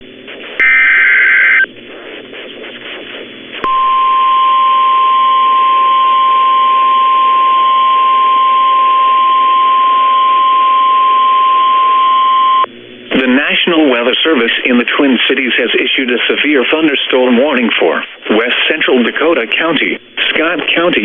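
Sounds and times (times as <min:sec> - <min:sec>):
radio hiss: 0:00.0 - 0:08.4, 0:12.5 - 0:21.0
single-pitch warning alarm tone: 0:00.6 - 0:01.6, 0:03.7 - 0:12.7
digital header code burst: 0:00.6 - 0:01.7.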